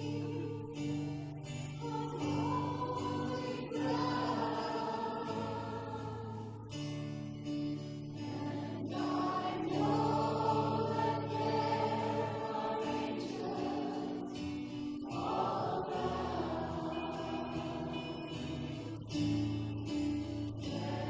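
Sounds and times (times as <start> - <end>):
group of voices singing: 0.0 - 7.2, 7.8 - 21.0.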